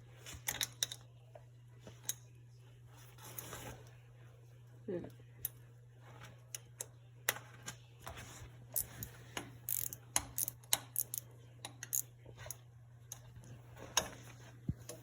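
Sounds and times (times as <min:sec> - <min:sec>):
wrench clicking on metal: 0:09.7 - 0:12.1.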